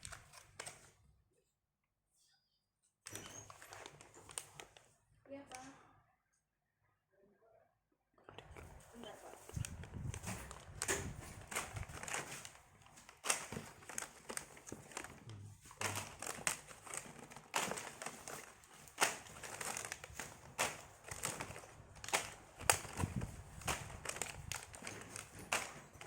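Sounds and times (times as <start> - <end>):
plastic packaging crinkling: 3.4 - 4.9, 8.4 - 26.0.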